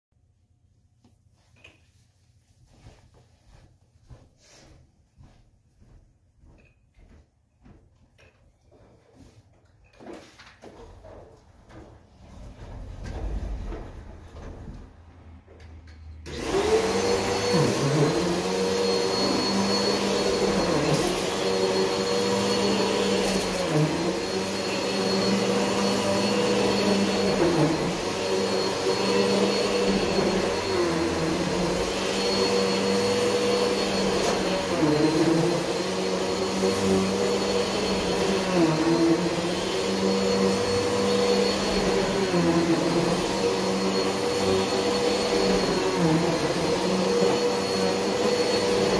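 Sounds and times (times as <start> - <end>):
vacuum cleaner running: 10.0 - 48.9.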